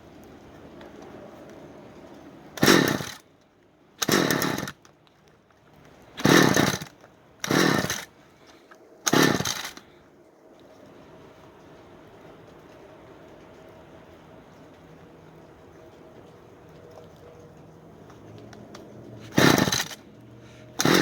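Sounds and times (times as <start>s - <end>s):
two-stroke engine sputtering bursts: 2.6s - 3.2s, 4.0s - 4.8s, 6.2s - 8.1s, 9.0s - 9.9s, 19.1s - 21.0s.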